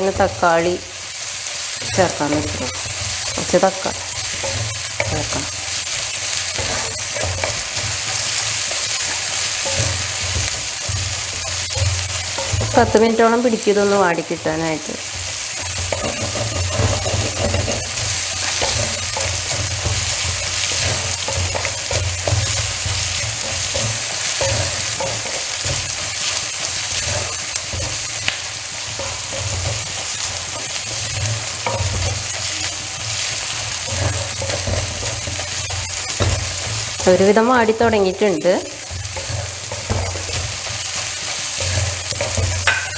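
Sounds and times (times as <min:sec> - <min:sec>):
ginger and garlic sizzling in oil: 0:00.0 - 0:42.9
spoon scraping a pan: 0:00.0 - 0:42.9.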